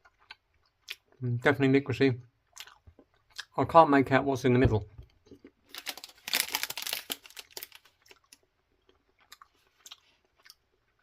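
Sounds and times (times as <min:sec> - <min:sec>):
wet mouth clicks of chewing: 0:08.1 - 0:11.0.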